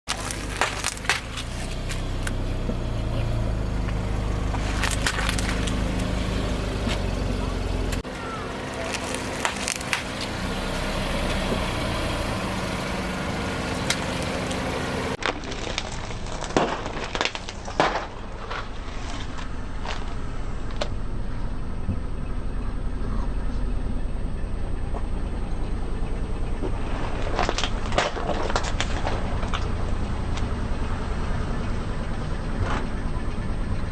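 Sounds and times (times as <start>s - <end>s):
objects crunching under tyres: 0.0s - 22.1s, 24.6s - 33.9s
car engine running: 0.0s - 33.9s
tyre crushing objects: 0.1s - 10.4s.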